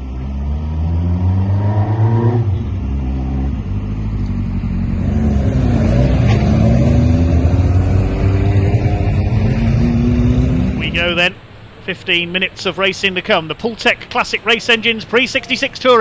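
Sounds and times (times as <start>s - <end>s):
race car engine accelerating: 0.0s - 11.2s.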